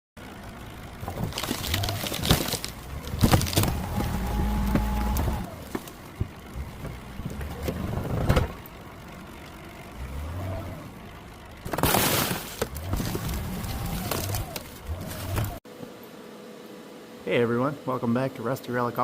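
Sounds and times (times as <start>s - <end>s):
engine running unevenly: 0.2s - 16.0s
engine knocks: 0.4s - 10.4s.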